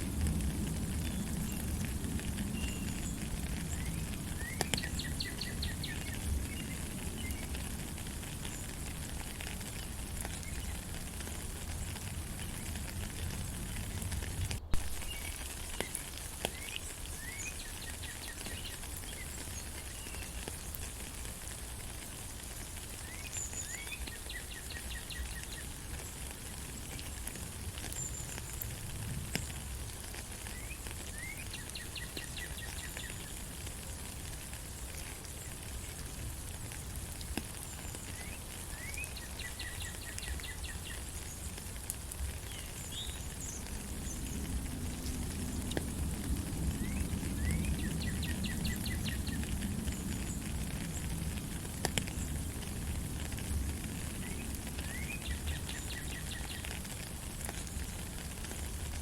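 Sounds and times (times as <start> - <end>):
steady rain in forest: 0.0 - 59.0
bird song with trill: 2.6 - 7.5, 14.9 - 20.4, 23.0 - 25.7, 30.6 - 33.4, 37.8 - 41.4, 42.4 - 44.4, 46.8 - 49.5, 54.2 - 56.7.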